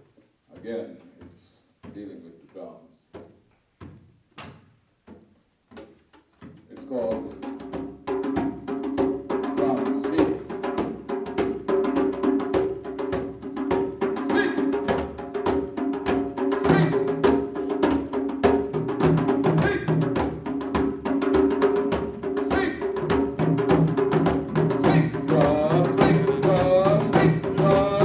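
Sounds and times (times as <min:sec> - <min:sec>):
quick drum strokes: 0:05.8 - 0:28.0.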